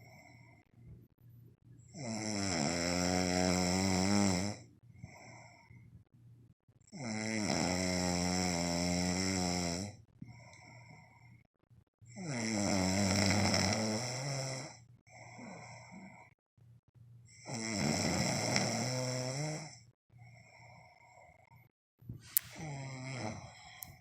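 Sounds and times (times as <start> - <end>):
loud snoring: 2.0 - 4.6, 7.0 - 10.0, 12.1 - 16.3, 17.4 - 19.8
soft breathing: 4.9 - 6.1, 10.2 - 11.5, 15.1 - 16.4, 20.1 - 24.0.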